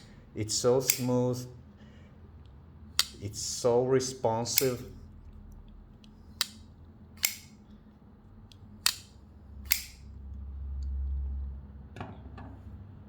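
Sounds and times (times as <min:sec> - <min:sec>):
knife blade metallic clicks: 0:00.8 - 0:01.2, 0:03.0 - 0:03.2, 0:04.5 - 0:05.0, 0:07.2 - 0:07.6, 0:08.8 - 0:10.0.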